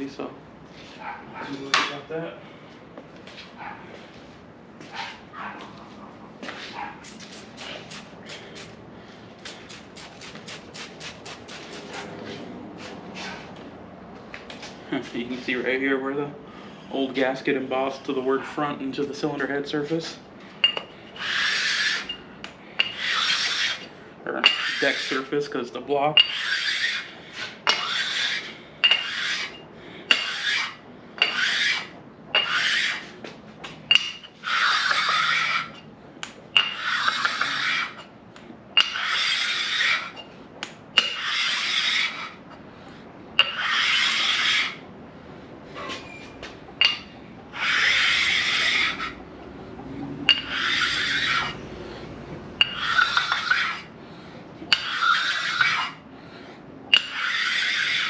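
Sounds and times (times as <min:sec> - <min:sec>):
sharpening stone rasping on metal: 0:20.6 - 0:22.2, 0:22.8 - 0:25.3, 0:26.2 - 0:33.1, 0:33.9 - 0:35.9, 0:36.6 - 0:38.1, 0:38.8 - 0:40.3, 0:41.0 - 0:42.5, 0:43.4 - 0:44.8, 0:46.8 - 0:49.2, 0:50.3 - 0:51.7, 0:52.6 - 0:53.9, 0:54.7 - 0:56.0, 0:56.9 - 0:58.0.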